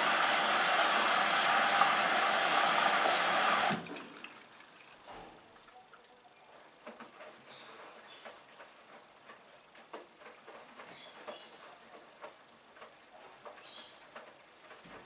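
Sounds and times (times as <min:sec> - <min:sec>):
water rushing through inlet valve: 0:00.0 - 0:04.6.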